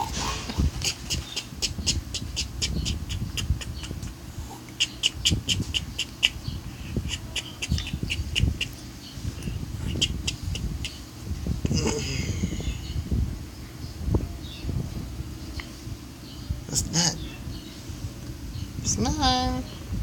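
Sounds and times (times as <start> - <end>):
low breathing rumble: 8.5 - 16.6.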